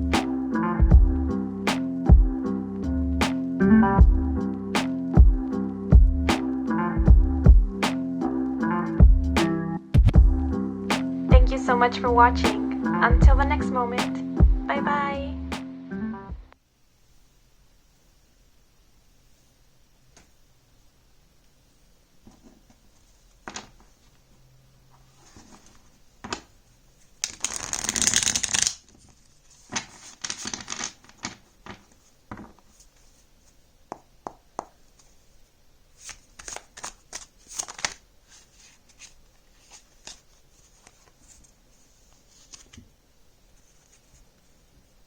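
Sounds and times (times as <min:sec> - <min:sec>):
cards being shuffled: 0:27.1 - 0:33.6, 0:36.0 - 0:42.9, 0:43.5 - 0:44.4
cards tapping and clicking: 0:33.9 - 0:34.8, 0:36.0 - 0:38.0.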